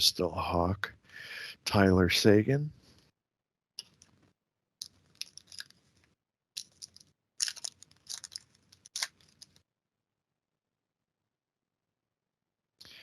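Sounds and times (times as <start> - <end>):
cards flipped with papery rustles: 4.8 - 9.6.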